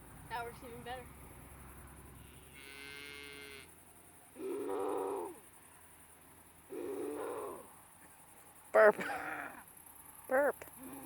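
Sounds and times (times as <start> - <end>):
cattle mooing: 2.6 - 3.7.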